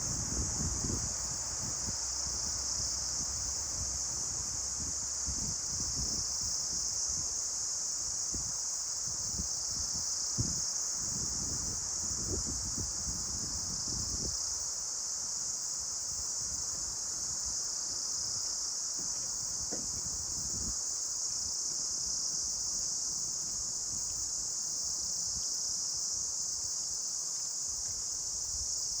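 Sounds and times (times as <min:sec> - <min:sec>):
soft wind gusts rumbling: 0:00.0 - 0:14.5
high-pitched insect chorus: 0:00.0 - 0:29.0
wind rustling tree leaves: 0:00.0 - 0:29.0.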